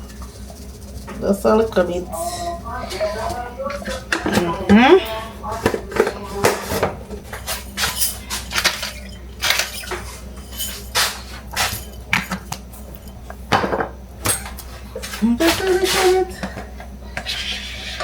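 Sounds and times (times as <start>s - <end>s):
metal utensils clinking in pot: 7.5s - 13.4s.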